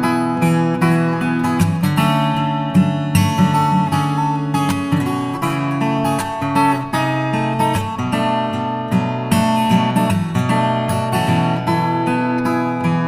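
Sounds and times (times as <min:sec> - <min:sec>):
acoustic guitar music: 0:00.0 - 0:13.0.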